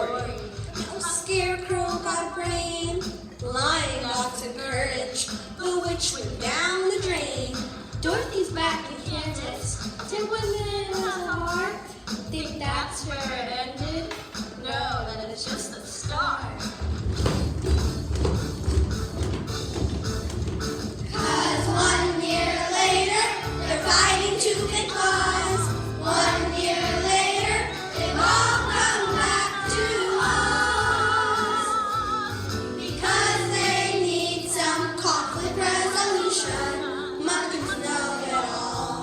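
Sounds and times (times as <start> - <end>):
musical accompaniment with bass line: 16.1 - 39.0
children singing: 21.1 - 39.0.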